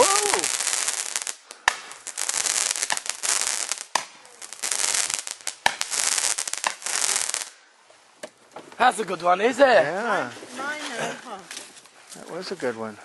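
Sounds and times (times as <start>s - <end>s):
firework sharp cracks: 0.0s - 7.6s
firework hissing and crackling: 0.0s - 7.7s.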